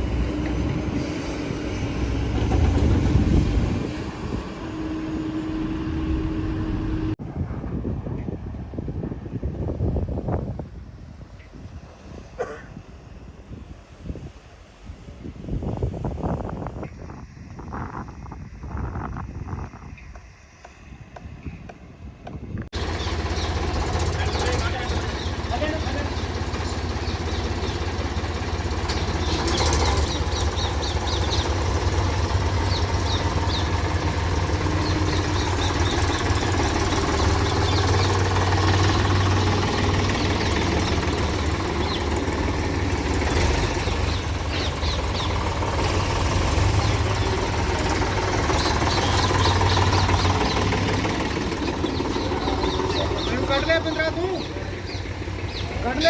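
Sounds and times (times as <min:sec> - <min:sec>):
digger diesel engine rumbling: 0:00.0 - 0:07.2, 0:22.7 - 0:56.0.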